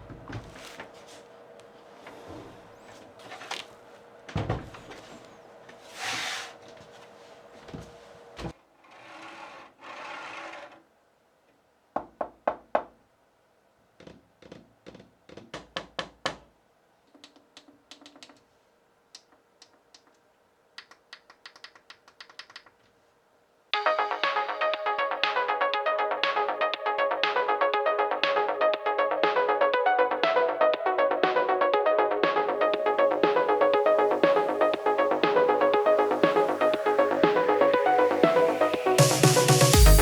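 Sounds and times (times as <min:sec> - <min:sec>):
quick sharp clicks and taps: 0:20.8 - 0:22.9.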